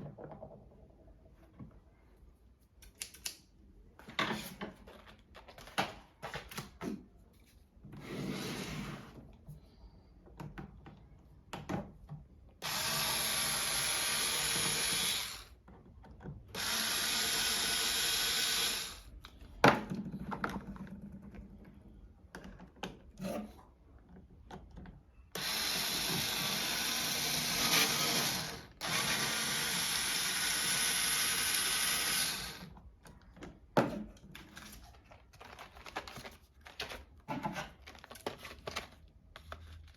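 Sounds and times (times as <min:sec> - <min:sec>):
power drill whining: 0:12.6 - 0:15.5, 0:16.6 - 0:19.1, 0:25.4 - 0:32.7.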